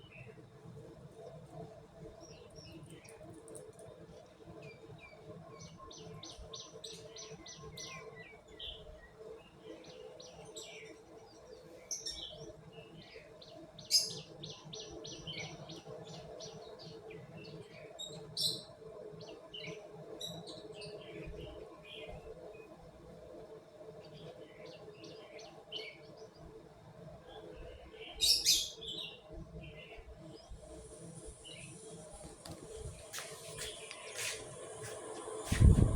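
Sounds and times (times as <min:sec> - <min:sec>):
small birds chirping: 0:01.2 - 0:22.7, 0:23.9 - 0:35.9
steady low hum: 0:29.4 - 0:35.9.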